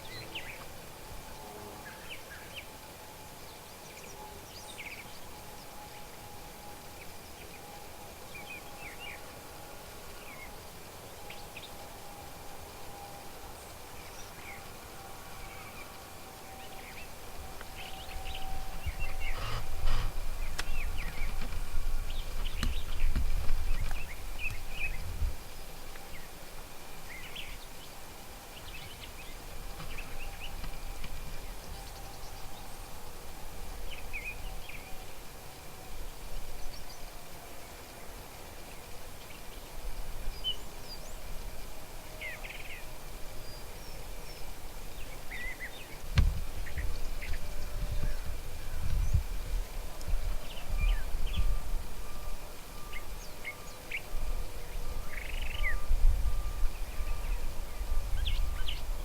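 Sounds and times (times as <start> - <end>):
birds chirping: 13.5 - 25.0.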